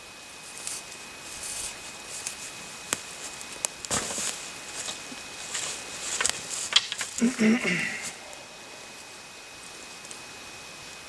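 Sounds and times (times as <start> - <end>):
rustling and scuffing: 0.4 - 7.2
rustling crunch: 0.4 - 10.3.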